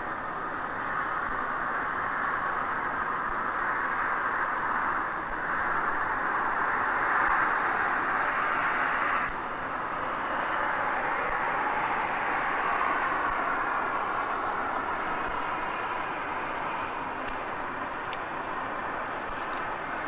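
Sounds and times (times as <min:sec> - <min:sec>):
hiss-like rushing noise: 0:00.0 - 0:20.0.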